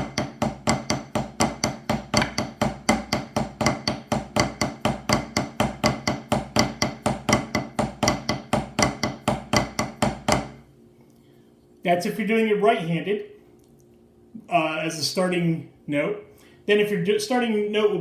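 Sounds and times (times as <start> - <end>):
drumsticks striking a drum: 0.0 - 10.6.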